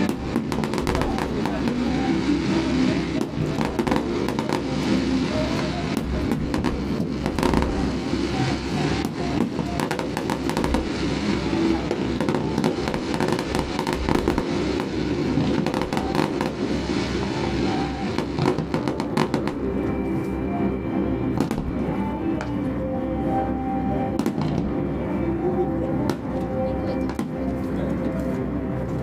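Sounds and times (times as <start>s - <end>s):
fireworks crackling and popping: 0.0s - 20.4s, 21.3s - 22.6s, 24.2s - 24.8s
continuous rumble: 0.0s - 29.0s.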